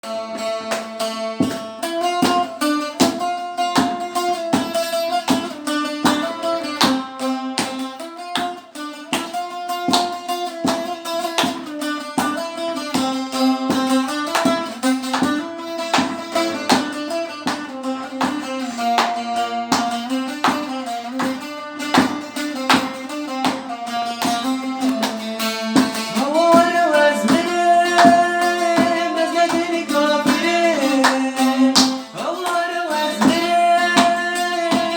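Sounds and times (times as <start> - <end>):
plucked string instrument melody: 0.0 - 34.9
person singing: 26.1 - 34.9.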